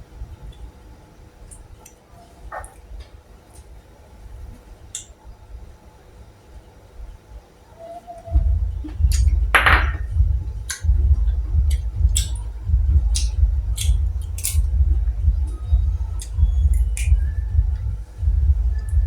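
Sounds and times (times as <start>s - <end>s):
heavy low rumble: 8.3s - 19.0s
snail shells clicking together: 11.7s - 12.4s, 13.1s - 14.8s.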